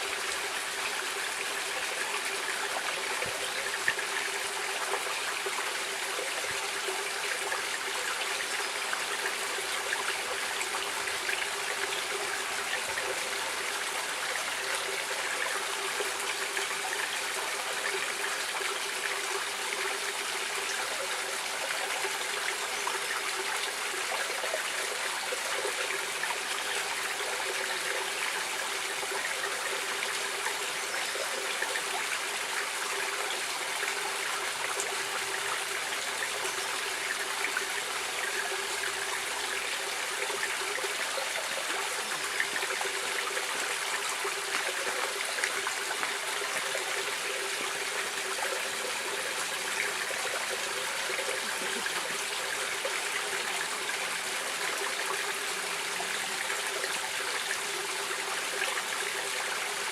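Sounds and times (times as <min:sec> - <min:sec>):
stream water flowing: 0:00.0 - 0:59.9.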